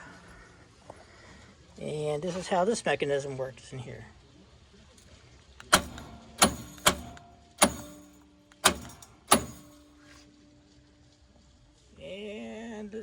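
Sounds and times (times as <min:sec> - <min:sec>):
car metal ringing: 0:05.6 - 0:09.9
solenoid metallic clacks: 0:05.6 - 0:10.0.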